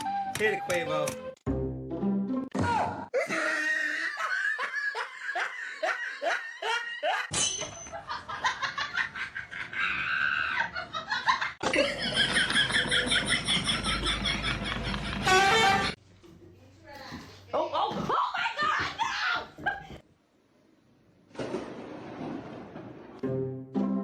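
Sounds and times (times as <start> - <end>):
people laughing hard: 3.2 - 7.3, 8.0 - 16.0.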